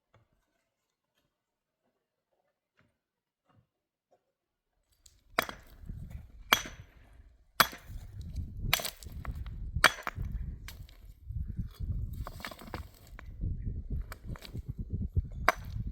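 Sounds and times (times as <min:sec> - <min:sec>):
axe chopping wood: 0:05.2 - 0:11.0, 0:15.3 - 0:15.9.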